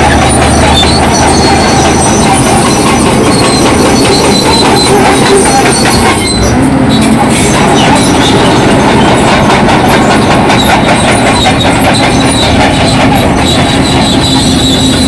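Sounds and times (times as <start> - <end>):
bulldozer diesel engine running: 0.0 - 15.0
steel tracks clanking: 0.0 - 15.0.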